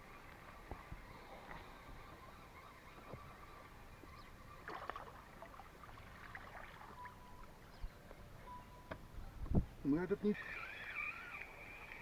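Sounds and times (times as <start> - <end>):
water lapping against a hull: 0.0 - 7.7.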